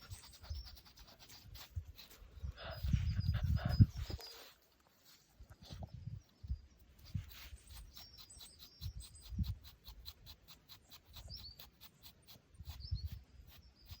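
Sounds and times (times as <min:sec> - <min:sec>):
metal comb raking dog's coat: 0:00.0 - 0:02.3
small birds chirping: 0:00.0 - 0:14.0
dog breathing in low puffs: 0:02.4 - 0:04.3.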